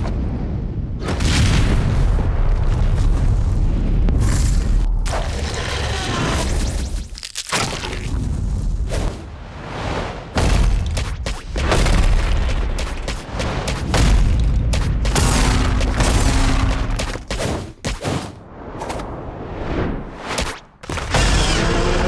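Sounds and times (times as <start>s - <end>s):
heavy booms and impacts: 10.4s - 17.4s
volleys of rapid hits: 10.4s - 19.0s.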